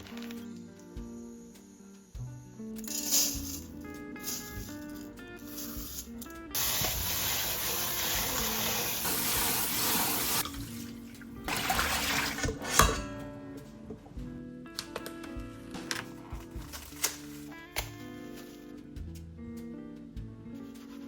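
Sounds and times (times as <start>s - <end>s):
soft background music: 0.0s - 21.0s
water running from tap into sink: 6.6s - 12.6s.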